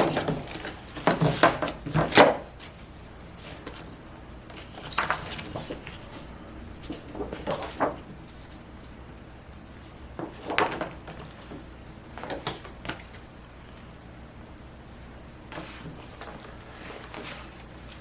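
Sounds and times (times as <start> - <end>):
handling rustling and knocks: 0.0 - 8.6, 10.1 - 13.3, 15.5 - 18.0
steady low hum: 0.0 - 18.0.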